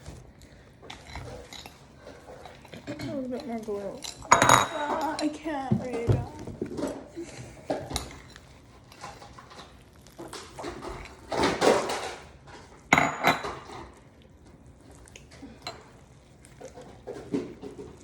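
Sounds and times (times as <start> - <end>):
utensil scraping a bowl: 0.8 - 14.1.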